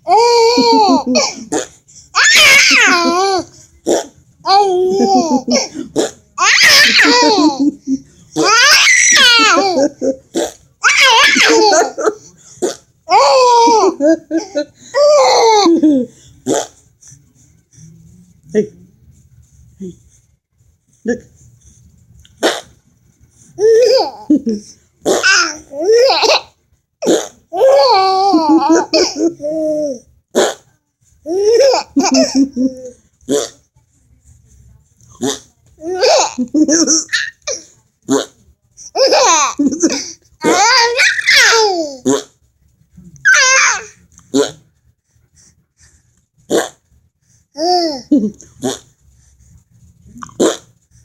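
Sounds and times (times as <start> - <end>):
baby laughing: 0.1 - 16.7, 23.6 - 26.4, 31.3 - 33.0, 35.8 - 37.6, 43.3 - 43.9.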